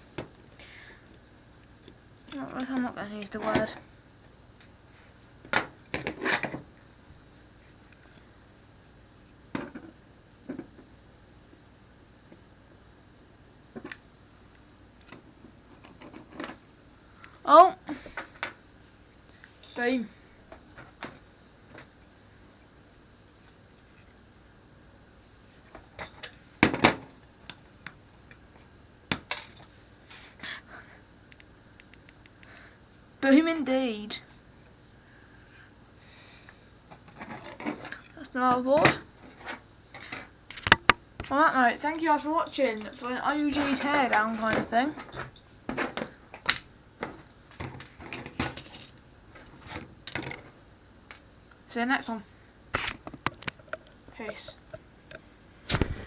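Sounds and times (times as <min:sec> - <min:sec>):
small phone parts clicking and knocking: 0:40.5 - 0:41.3.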